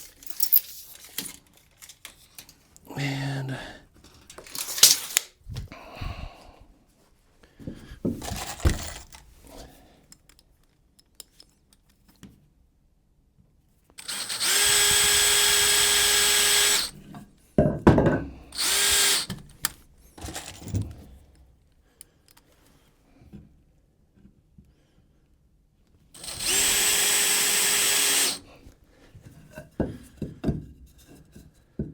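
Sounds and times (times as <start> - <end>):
boards being handled: 4.3 - 5.7
power drill driving a fastener: 4.5 - 5.3, 14.0 - 17.0, 18.6 - 20.7, 26.2 - 28.5.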